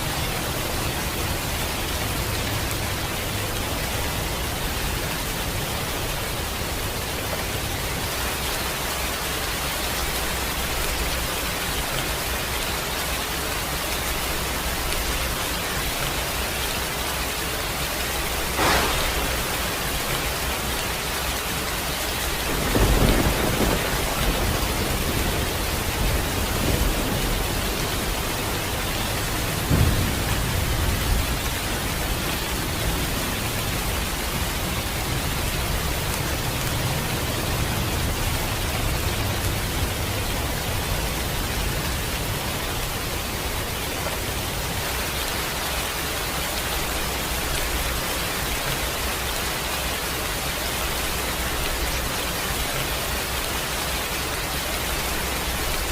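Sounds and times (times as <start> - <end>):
heavy rain hissing: 0.0 - 55.9
thunder rumbling: 17.6 - 55.9
thunder crack: 18.3 - 33.2.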